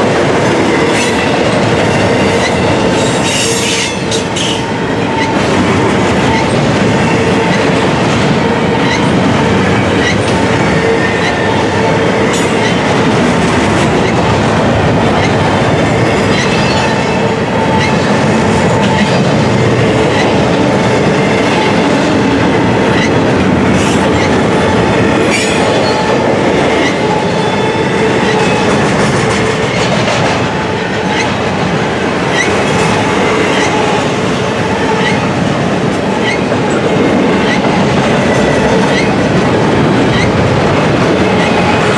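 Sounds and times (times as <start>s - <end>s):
freight train rolling past: 0.0s - 41.9s
wheels squealing on rail: 1.9s - 12.9s, 16.0s - 19.2s, 22.9s - 23.2s, 23.8s - 24.7s, 25.3s - 30.0s, 32.3s - 34.0s, 34.6s - 35.3s, 36.2s - 39.2s, 40.1s - 40.4s.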